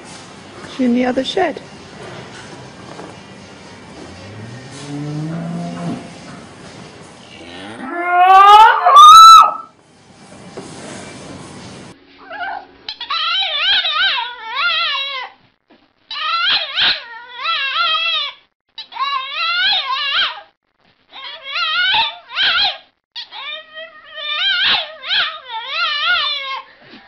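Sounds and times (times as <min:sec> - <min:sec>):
animal call rising in pitch: 0:07.4 - 0:09.7
high wavering howl-like cries: 0:07.7 - 0:09.8.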